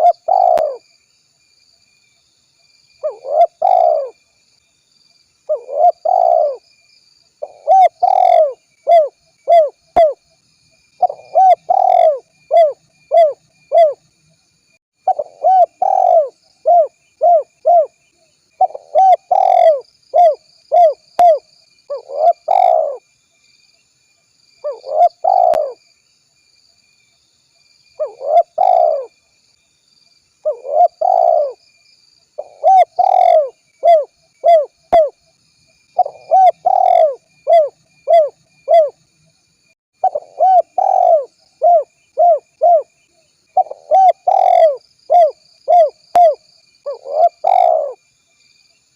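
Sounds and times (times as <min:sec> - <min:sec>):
dove cooing: 0:00.0 - 0:00.8, 0:03.0 - 0:04.2, 0:05.5 - 0:06.6, 0:07.4 - 0:10.2, 0:11.0 - 0:14.0, 0:15.0 - 0:18.0, 0:18.6 - 0:23.0, 0:24.6 - 0:25.8, 0:28.0 - 0:29.1, 0:30.4 - 0:31.6, 0:32.4 - 0:35.2, 0:36.0 - 0:39.0, 0:40.0 - 0:42.9, 0:43.6 - 0:48.0.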